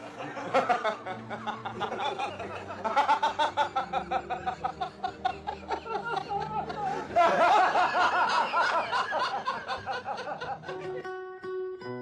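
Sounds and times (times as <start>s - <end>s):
person giggling: 0.2s - 7.5s.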